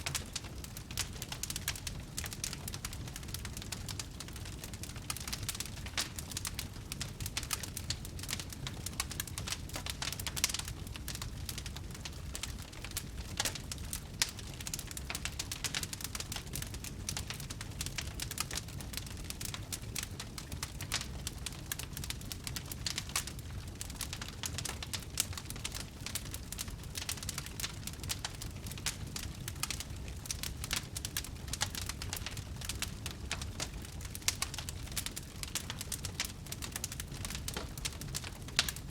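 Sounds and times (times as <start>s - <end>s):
fire crackling and popping: 0.0s - 38.9s.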